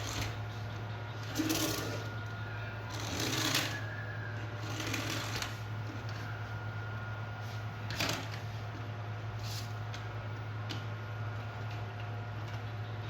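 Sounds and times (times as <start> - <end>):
plastic toy vehicles rattling: 0.0 - 0.4, 1.2 - 2.2, 2.8 - 3.9, 4.6 - 5.6
steady low hum: 0.0 - 13.0.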